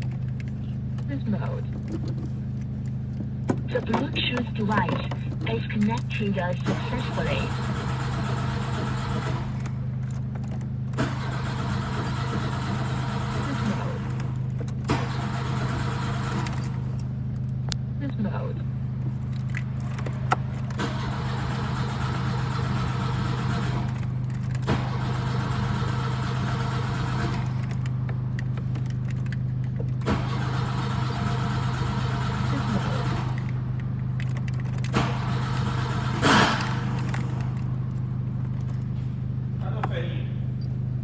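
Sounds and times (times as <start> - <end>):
steady low hum: 0.0 - 41.0
starter motor cranking engine: 1.7 - 17.4, 19.2 - 38.9.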